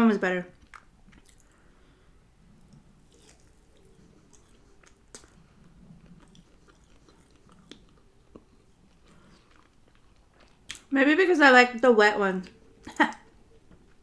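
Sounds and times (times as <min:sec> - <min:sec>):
wet mouth clicks and smacks: 0:00.6 - 0:01.5
person chewing: 0:00.6 - 0:10.9.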